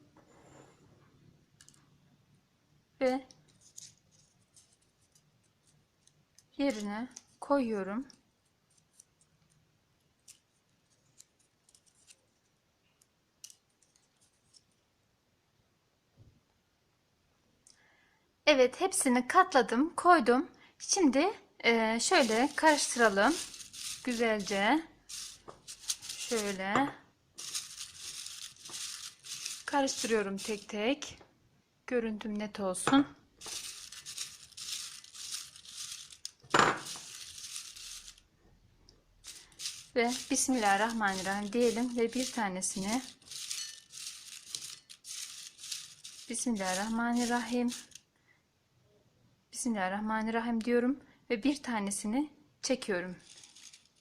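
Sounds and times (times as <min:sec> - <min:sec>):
paper slips clicking and rustling: 0:03.0 - 0:07.3, 0:10.2 - 0:12.3, 0:22.0 - 0:26.7, 0:27.4 - 0:30.8, 0:33.4 - 0:38.2, 0:39.2 - 0:48.0, 0:53.2 - 0:54.0.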